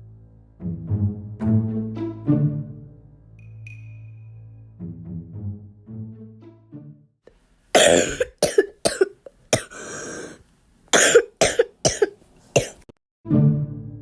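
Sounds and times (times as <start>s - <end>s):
person coughing hard: 7.8s - 12.8s
long breath drawn in: 9.7s - 10.4s.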